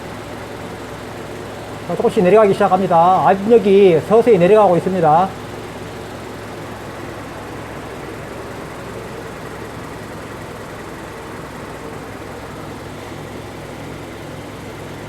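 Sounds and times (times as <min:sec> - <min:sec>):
car engine idling: 0:00.0 - 0:15.0
radiator cooling fan whirring: 0:00.0 - 0:15.0.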